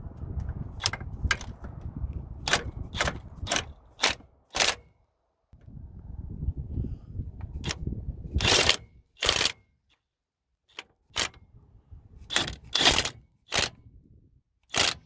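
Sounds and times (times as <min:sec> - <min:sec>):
low rumble of handling: 0:00.0 - 0:04.5, 0:05.6 - 0:08.5
ratchet wrench ratcheting: 0:07.5 - 0:09.6, 0:12.3 - 0:13.8, 0:14.7 - 0:15.0.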